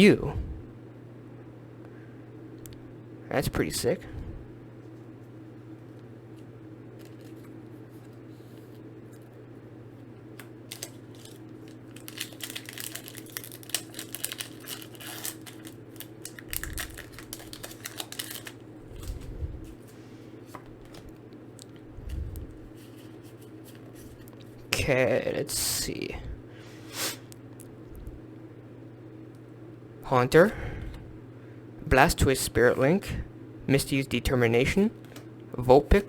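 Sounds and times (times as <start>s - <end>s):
low steady hum: 0.0s - 36.0s
foil pack tearing and crinkling: 10.7s - 19.2s.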